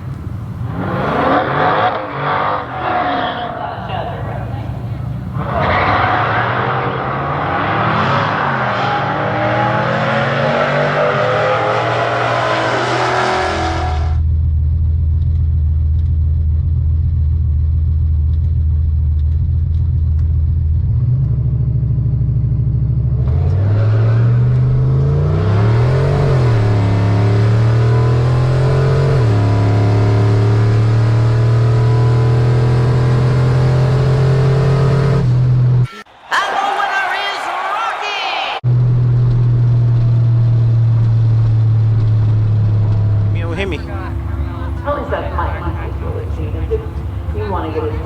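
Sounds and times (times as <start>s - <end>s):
big engine idling with deep rumble: 0.0s - 0.8s, 2.6s - 5.6s, 39.6s - 48.0s
high-revving race car engine: 0.0s - 14.2s, 20.6s - 35.9s.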